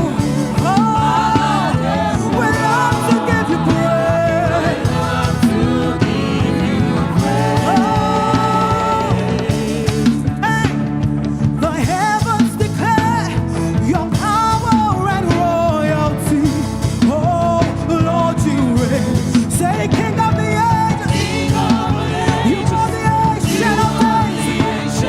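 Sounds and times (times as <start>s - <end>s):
person singing lead: 0.0s - 10.8s
church band playing: 0.0s - 25.0s.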